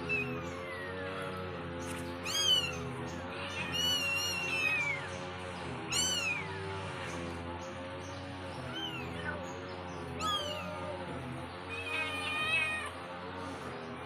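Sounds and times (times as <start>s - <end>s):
kitten mewing: 2.2s - 5.1s.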